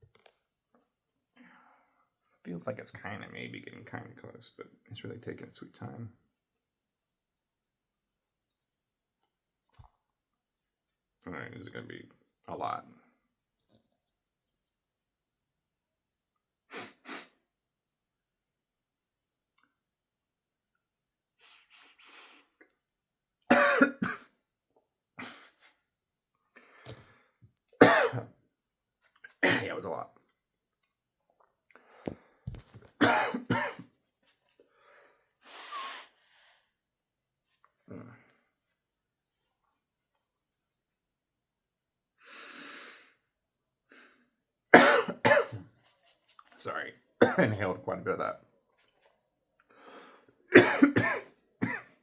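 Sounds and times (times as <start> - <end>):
man sniffing sharply: 16.7 - 17.4, 21.4 - 22.6
man coughing harshly: 23.5 - 24.3, 27.8 - 28.3, 29.4 - 29.7, 33.0 - 33.8, 44.8 - 45.6, 47.2 - 47.5, 50.5 - 51.9
man breathing: 49.7 - 50.4.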